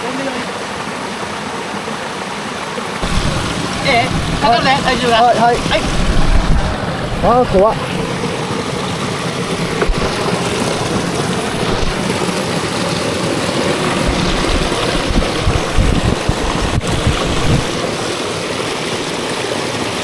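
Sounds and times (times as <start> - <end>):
waterfall rushing: 0.0 - 20.0
wind bumps on microphone: 3.0 - 8.1, 9.5 - 12.4, 13.9 - 18.0.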